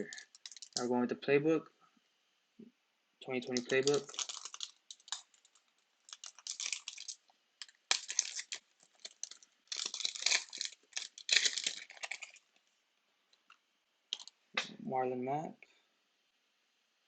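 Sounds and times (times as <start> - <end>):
foil wrapper crinkling and tearing: 0.0 - 0.9, 3.4 - 12.6, 14.1 - 14.3.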